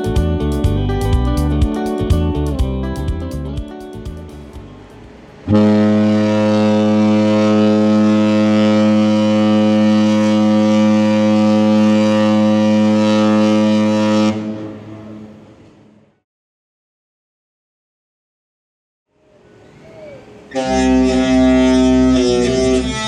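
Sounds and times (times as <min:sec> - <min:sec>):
ship's horn long blast: 0:05.4 - 0:16.0, 0:20.5 - 0:23.0.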